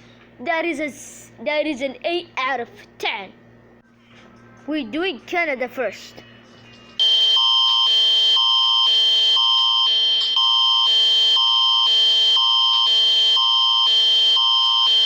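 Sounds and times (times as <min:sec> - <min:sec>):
emergency alert tone: 0:07.0 - 0:15.0.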